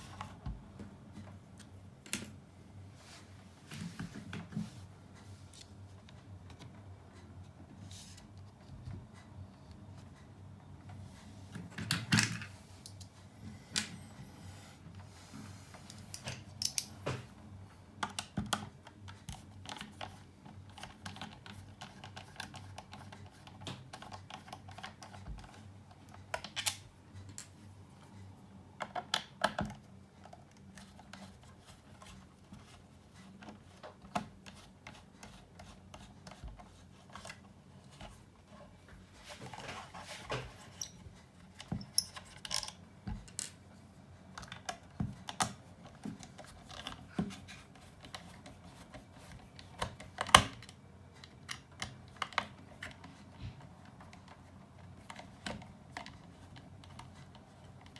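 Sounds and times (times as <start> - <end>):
faint steady hum: 0.0 - 57.9.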